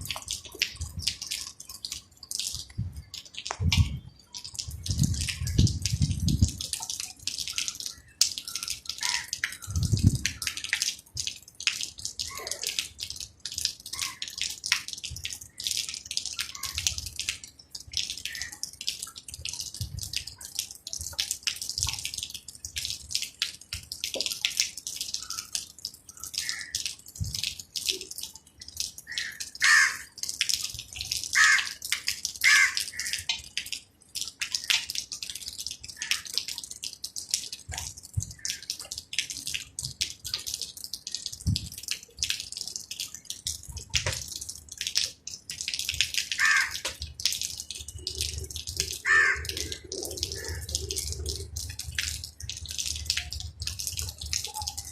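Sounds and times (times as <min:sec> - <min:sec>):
rain dripping and splashing: 0:00.0 - 0:54.9.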